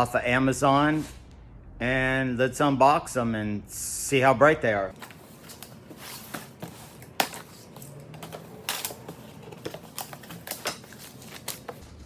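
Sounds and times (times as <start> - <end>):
cardboard packaging handled: 4.9 - 12.0.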